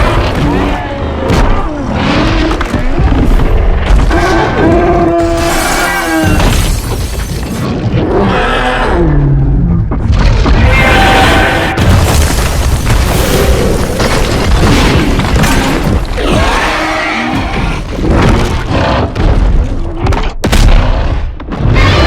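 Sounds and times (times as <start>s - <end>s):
monster roars: 4.0s - 6.6s, 8.0s - 9.7s, 10.5s - 12.0s, 13.0s - 19.2s
heavy booms and crashing impacts: 10.0s - 19.8s.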